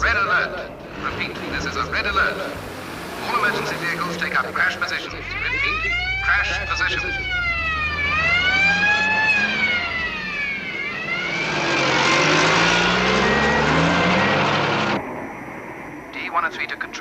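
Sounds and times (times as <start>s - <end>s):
emergency sirens wailing: 0.0s - 17.0s
engine rumble: 0.0s - 17.0s
loud rushing noise: 0.7s - 5.8s, 8.7s - 16.3s.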